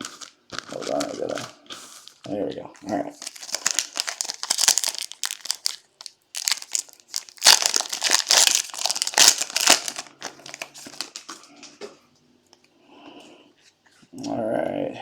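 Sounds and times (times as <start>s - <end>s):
foil wrapper crinkling and tearing: 0.0s - 11.5s.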